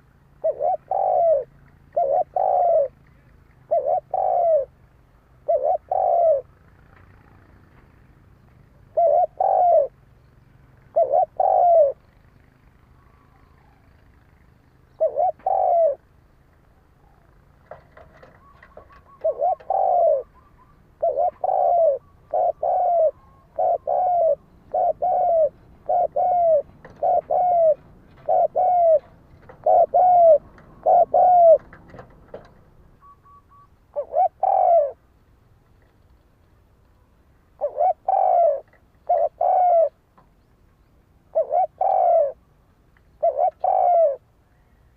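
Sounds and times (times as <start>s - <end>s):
dove cooing: 0.0s - 4.8s, 5.4s - 7.5s, 8.7s - 10.0s, 10.8s - 12.2s, 14.9s - 16.1s, 16.9s - 35.0s, 37.6s - 40.0s, 41.3s - 42.5s, 43.1s - 44.9s.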